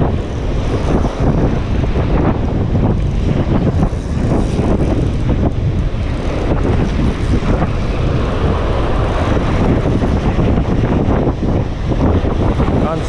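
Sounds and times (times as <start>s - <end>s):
wind buffeting microphone: 0.0s - 13.0s.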